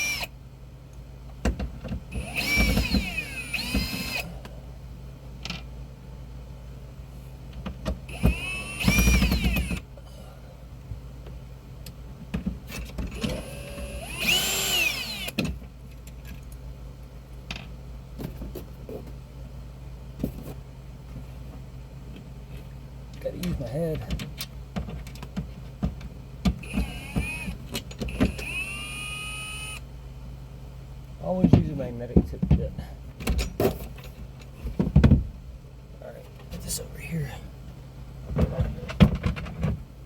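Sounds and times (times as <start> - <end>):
electric screwdriver whine: 0.0 - 0.3, 2.2 - 4.3, 8.1 - 9.8, 13.2 - 15.4, 26.6 - 29.8.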